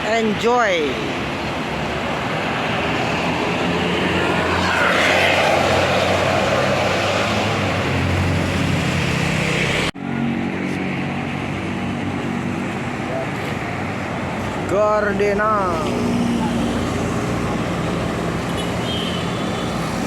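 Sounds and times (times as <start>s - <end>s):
bus passing close by: 1.2s - 14.7s.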